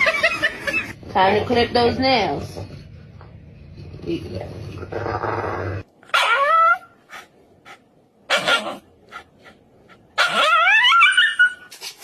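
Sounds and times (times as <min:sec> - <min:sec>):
dog yelping: 0:06.1 - 0:07.0, 0:08.3 - 0:08.9, 0:10.2 - 0:11.7
dog barking: 0:08.3 - 0:08.8.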